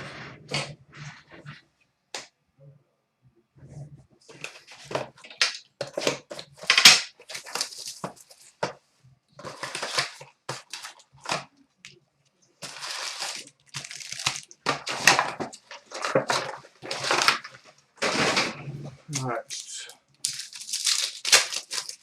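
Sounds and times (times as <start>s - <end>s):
plastic wrap crinkling and tearing: 4.3s - 8.6s, 9.4s - 11.5s, 12.6s - 18.6s, 19.4s - 22.0s.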